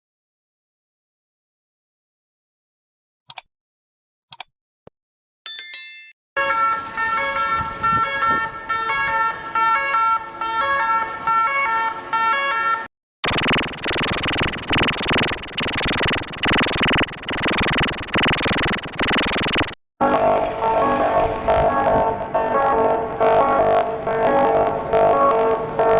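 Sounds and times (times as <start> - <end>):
ambulance siren: 6.4 - 12.9.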